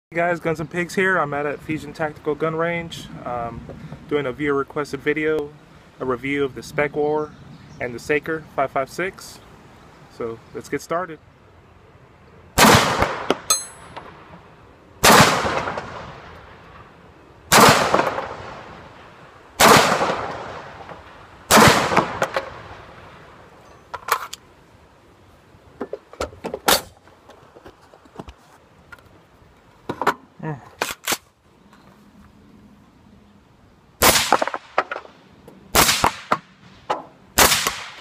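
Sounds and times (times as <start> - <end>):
suppressed rifle shots echoing: 12.6 - 14.2, 15.0 - 16.3, 17.5 - 18.6, 19.6 - 22.8
high metallic ping: 13.5 - 14.1.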